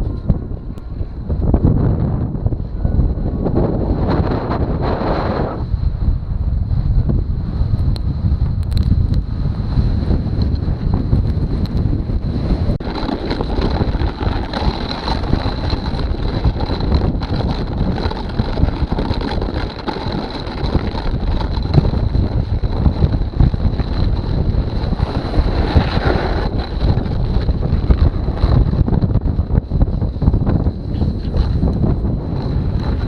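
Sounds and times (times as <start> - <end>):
wind buffeting microphone: 0.0 - 33.0
snowboard running over ice: 12.4 - 33.0.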